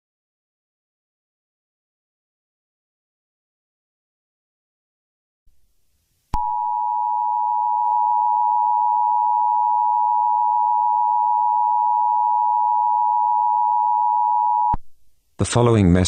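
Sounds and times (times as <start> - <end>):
two-tone electronic beep: 6.4 - 14.8.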